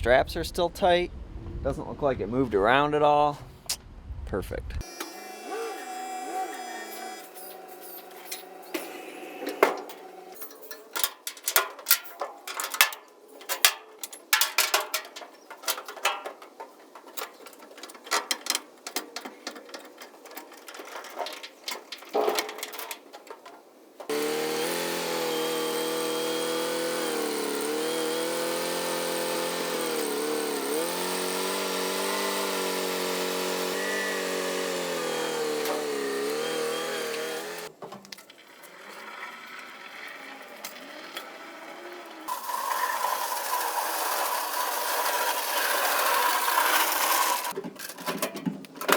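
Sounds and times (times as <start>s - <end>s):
sharp knocks and clanks: 6.8s - 38.2s.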